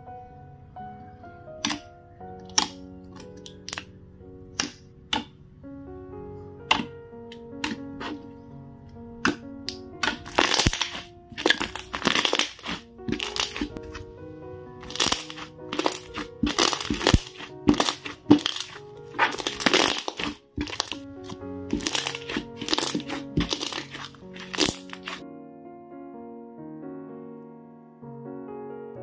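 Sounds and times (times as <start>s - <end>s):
background music: 0.0s - 29.0s
slime crackling squishes: 7.6s - 8.2s, 9.2s - 14.1s, 14.8s - 25.2s.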